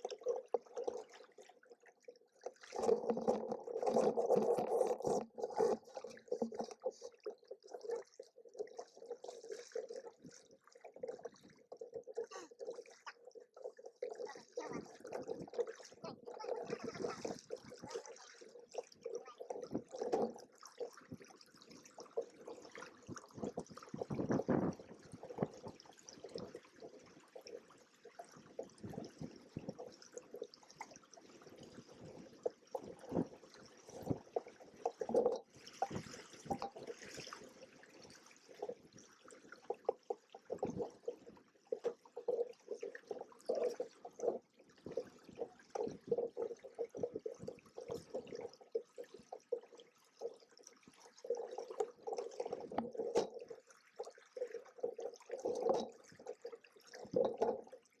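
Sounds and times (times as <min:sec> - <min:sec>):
water slapping against hulls: 0:15.6 - 0:18.4.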